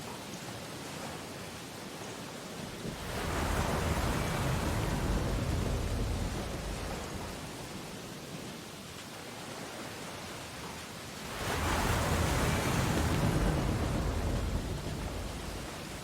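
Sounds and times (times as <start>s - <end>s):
ocean wave breaking: 2.8s - 8.0s, 11.2s - 16.0s.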